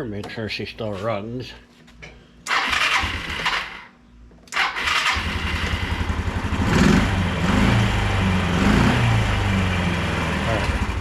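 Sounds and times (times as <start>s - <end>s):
electric starter cranking: 2.5s - 3.9s, 4.5s - 6.0s
scooter engine idling: 5.1s - 11.0s.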